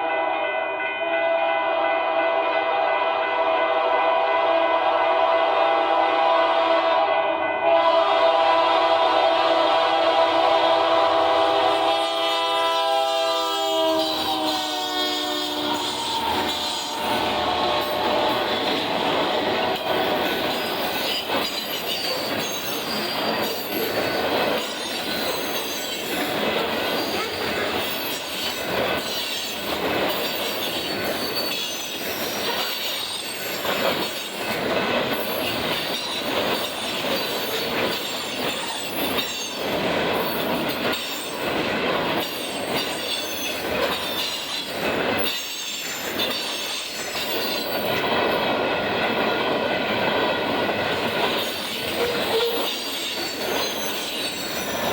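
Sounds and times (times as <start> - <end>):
train wheels clacking: 9.9 - 54.9
wheel squeal: 19.6 - 34.4, 42.2 - 47.8, 51.3 - 54.9.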